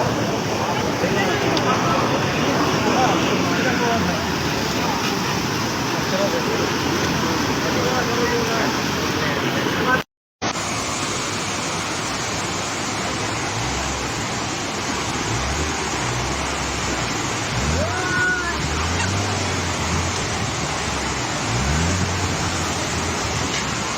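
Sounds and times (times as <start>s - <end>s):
vehicle engines revving: 0.0s - 10.0s, 11.1s - 23.9s
heavy rain hissing: 0.0s - 23.9s.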